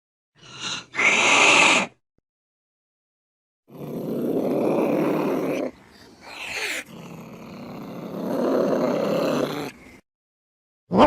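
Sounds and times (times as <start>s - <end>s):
cat growling: 0.5s - 2.0s, 3.7s - 10.0s.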